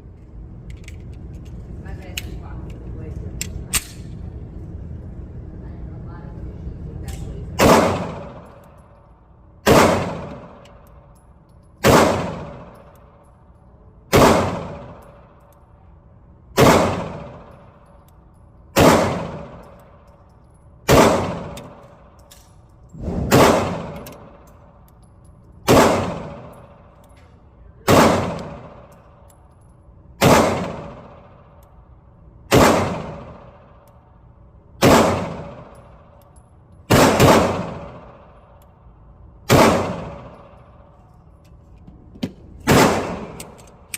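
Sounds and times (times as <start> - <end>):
pistol shots with ringing tail: 7.6 - 9.0, 9.6 - 11.2, 11.8 - 13.2, 14.1 - 15.5, 16.5 - 17.8, 18.7 - 20.1, 20.8 - 22.4, 23.0 - 24.8, 25.6 - 27.0, 27.8 - 29.3, 30.2 - 31.6, 32.5 - 33.8, 34.8 - 36.2, 36.9 - 38.6, 39.4 - 41.0, 42.6 - 43.9.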